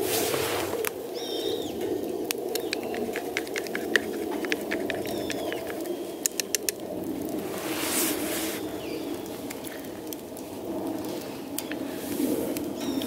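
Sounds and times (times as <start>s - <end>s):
quick sharp clicks and crackles: 1.8s - 7.5s
small bird chirping: 4.9s - 6.7s.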